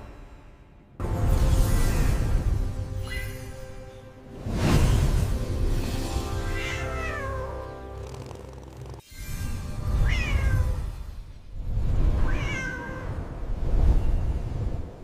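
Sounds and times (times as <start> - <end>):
background music: 0.0 - 9.0
cat meowing: 10.0 - 10.9, 12.2 - 13.1.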